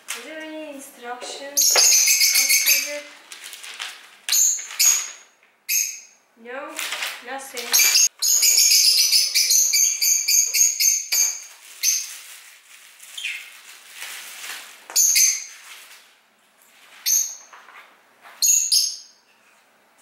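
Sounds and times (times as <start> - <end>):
parrot chirping calls: 1.3 - 3.2, 4.3 - 6.3, 7.6 - 12.2, 13.1 - 13.6, 14.9 - 15.6, 18.4 - 19.3.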